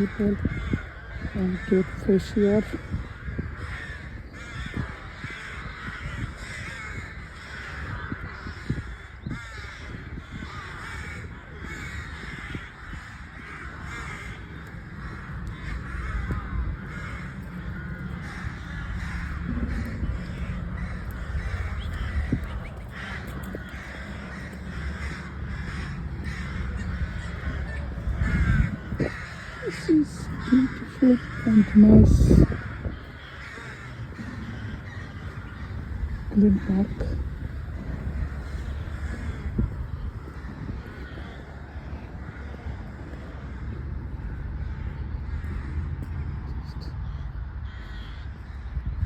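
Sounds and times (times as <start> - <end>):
crows cawing: 0.0 - 49.0
low rumble: 11.8 - 49.0.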